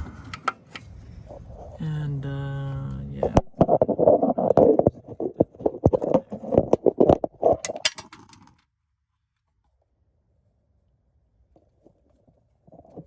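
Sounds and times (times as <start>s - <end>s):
hand tools clinking: 7.6s - 8.5s.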